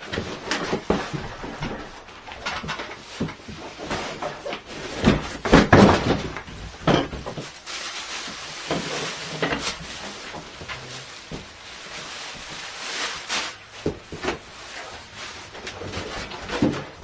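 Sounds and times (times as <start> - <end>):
knocks and clunks of parts: 0.0 - 7.5
rustling packaging: 0.0 - 17.0.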